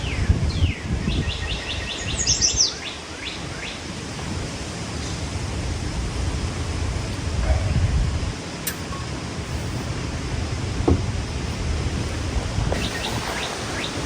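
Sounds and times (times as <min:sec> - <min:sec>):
steady low rumble: 0:04.3 - 0:14.0.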